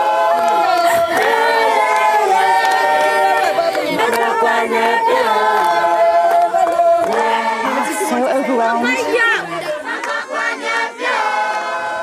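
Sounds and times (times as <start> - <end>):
group singing long notes: 0.0 - 12.0.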